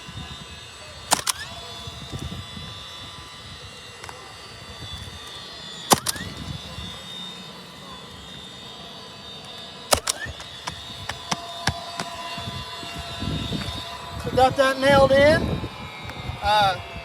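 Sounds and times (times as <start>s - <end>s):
nail gun shots: 1.1s - 1.5s, 5.9s - 6.4s, 9.9s - 12.1s.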